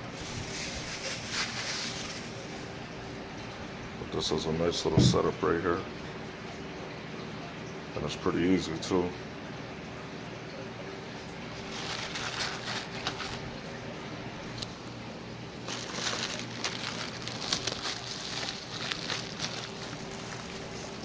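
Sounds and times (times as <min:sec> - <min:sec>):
plastic packaging crinkling: 0:00.0 - 0:03.2, 0:11.5 - 0:13.8, 0:14.4 - 0:21.0.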